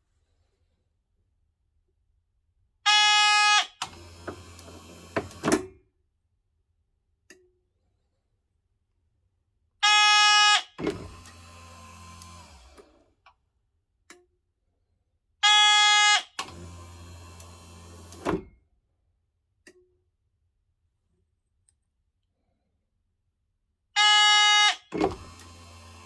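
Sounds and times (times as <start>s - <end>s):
door motor running: 3.9s - 5.6s, 10.8s - 13.1s, 16.4s - 18.5s, 24.9s - 26.0s.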